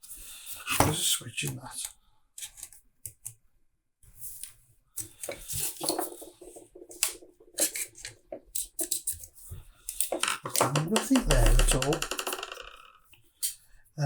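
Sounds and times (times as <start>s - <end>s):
small parts clicking and clattering: 5.0s - 10.8s.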